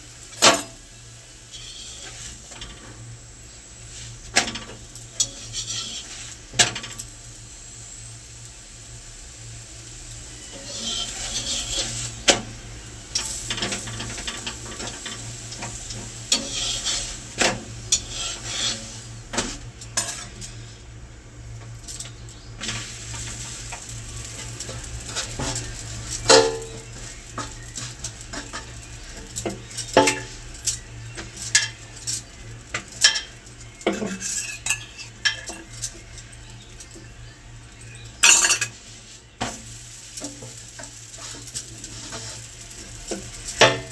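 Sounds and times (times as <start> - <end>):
metal utensils and pans clinking: 4.3 - 7.1, 10.5 - 12.5, 13.2 - 20.6, 21.8 - 37.1, 37.7 - 43.9.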